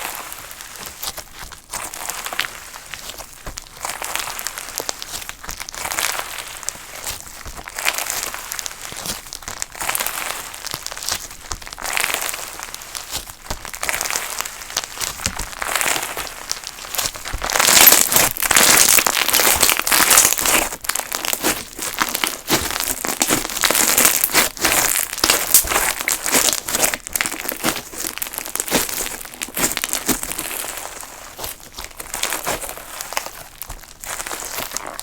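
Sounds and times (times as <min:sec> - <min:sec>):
slime crackling and popping: 0:00.0 - 0:35.0.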